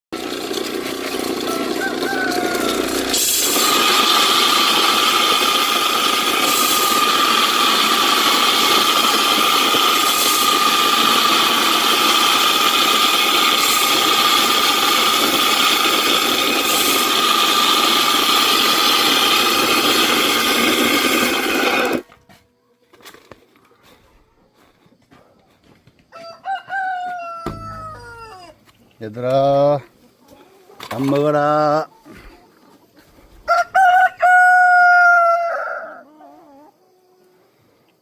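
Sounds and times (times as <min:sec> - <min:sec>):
machine motor whining: 0:00.2 - 0:22.0.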